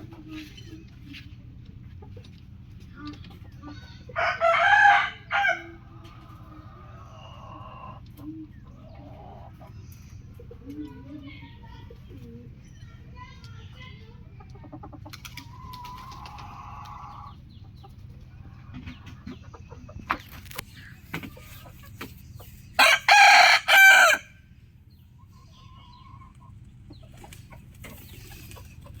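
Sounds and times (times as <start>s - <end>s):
chicken clucks: 0.0s - 29.0s
rooster crowing: 4.2s - 5.8s, 22.8s - 24.4s.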